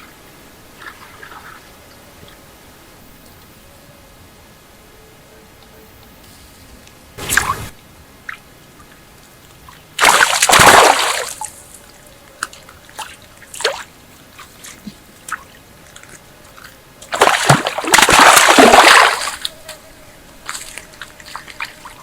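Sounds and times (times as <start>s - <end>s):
water splashing and sloshing: 0.0s - 1.8s, 7.2s - 22.0s
water drips and plops: 8.3s - 11.5s, 12.4s - 19.5s.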